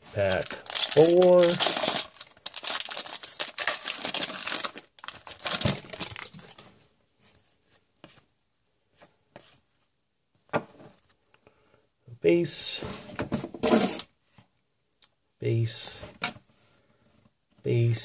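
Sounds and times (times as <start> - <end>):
wrapper tearing and crinkling: 0.2 - 6.6.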